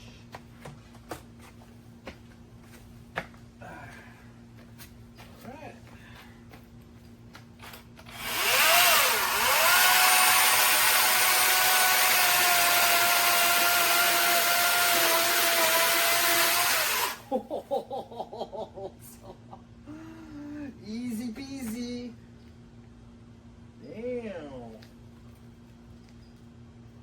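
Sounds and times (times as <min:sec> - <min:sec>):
chainsaw cutting tree trunk: 0:08.1 - 0:17.3
electric chainsaw motor whine: 0:08.1 - 0:17.3.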